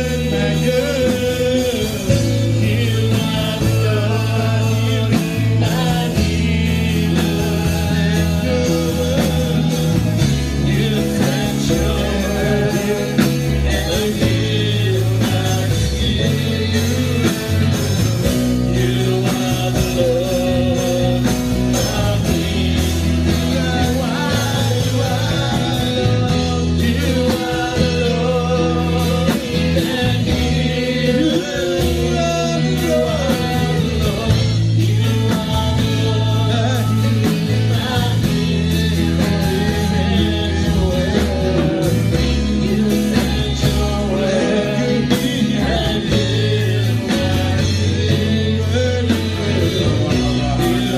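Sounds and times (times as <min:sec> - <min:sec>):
band with bass: 0:00.0 - 0:50.9
busy drums: 0:00.0 - 0:50.9
gospel singing: 0:00.0 - 0:50.9.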